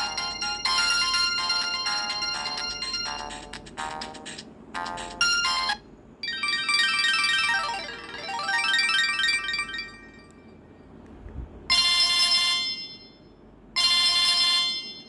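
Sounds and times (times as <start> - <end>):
mobile phone ringtone: 0.0 - 10.3, 13.8 - 15.0.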